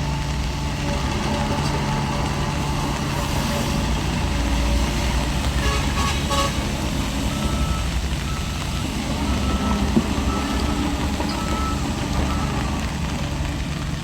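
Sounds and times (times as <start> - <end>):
diesel construction machinery running: 0.0 - 14.0
reversing alarm beeping: 7.3 - 12.7.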